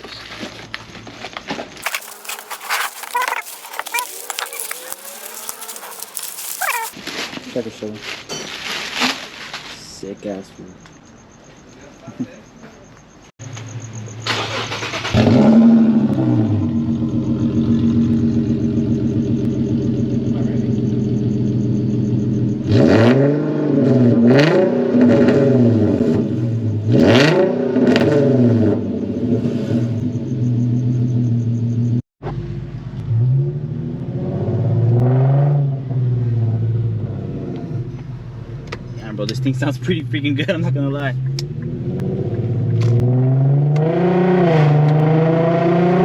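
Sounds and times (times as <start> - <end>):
car engine idling and revving: 13.8 - 46.0.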